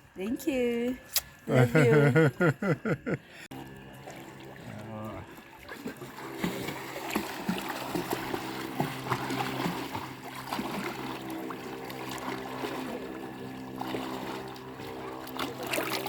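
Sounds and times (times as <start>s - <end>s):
steady low hum: 0.0s - 16.0s
water splashing from swimming: 3.5s - 16.0s.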